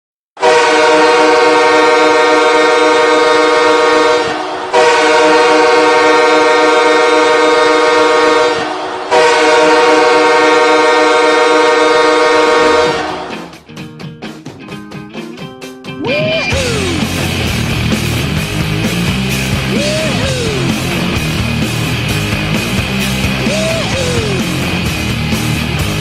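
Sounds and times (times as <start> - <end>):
arena goal horn blasts: 0.4 - 13.3.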